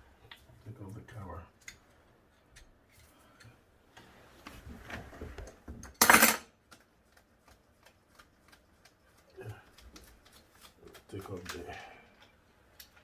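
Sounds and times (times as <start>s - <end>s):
hand tools and parts clinking: 5.8s - 6.5s.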